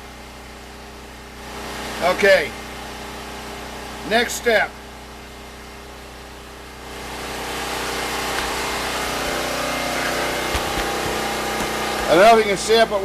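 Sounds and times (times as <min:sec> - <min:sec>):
generator engine running: 0:00.0 - 0:13.0.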